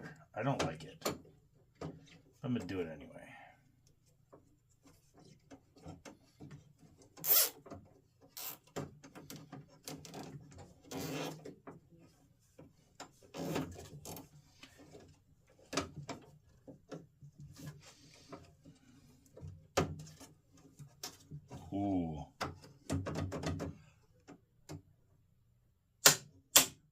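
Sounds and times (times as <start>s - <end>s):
zip ties rasping: 7.2s - 7.6s.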